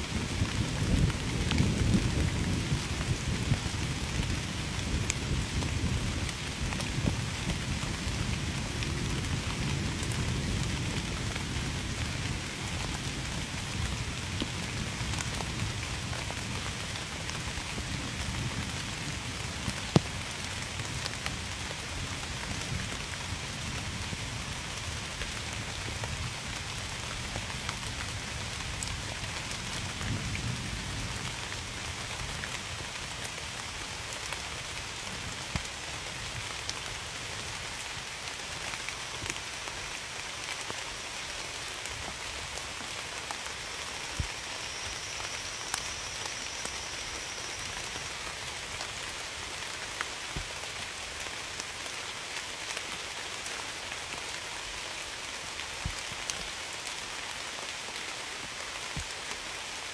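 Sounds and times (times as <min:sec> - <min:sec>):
heavy rain falling: 0:00.0 - 0:59.9
raindrops clicking on surface: 0:12.2 - 0:23.3, 0:35.0 - 0:49.1, 0:49.7 - 0:54.8, 0:58.9 - 0:59.4.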